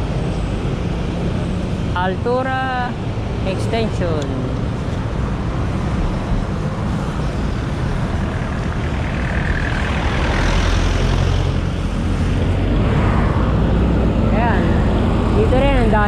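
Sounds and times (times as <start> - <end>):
road traffic rumble: 0.0 - 16.0.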